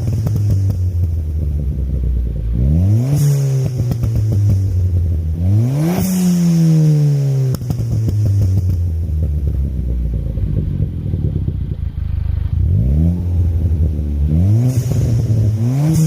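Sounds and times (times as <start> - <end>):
car engine crackling and popping: 0.0 - 16.0
car engine revving: 0.0 - 16.0.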